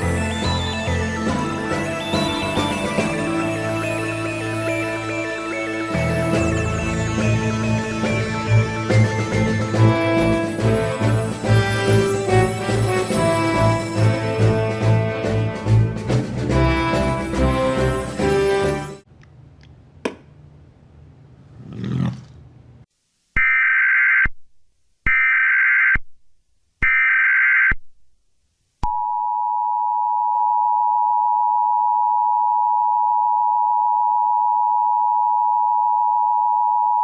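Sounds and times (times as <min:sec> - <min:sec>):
music: 0:00.0 - 0:19.0.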